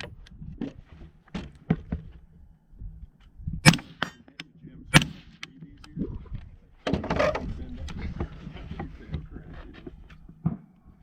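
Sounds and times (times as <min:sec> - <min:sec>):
rifle shots: 0:03.6 - 0:05.5
rifle action clicks: 0:03.7 - 0:06.0.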